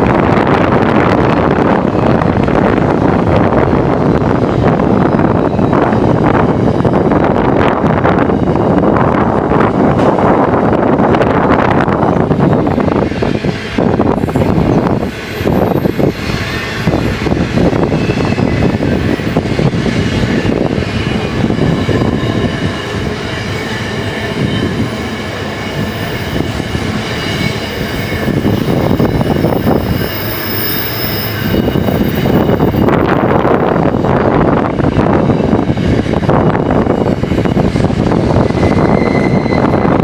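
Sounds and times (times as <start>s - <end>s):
freight train wheels rumbling: 0.0s - 40.0s
wheel squeal: 14.5s - 33.0s, 38.2s - 40.0s.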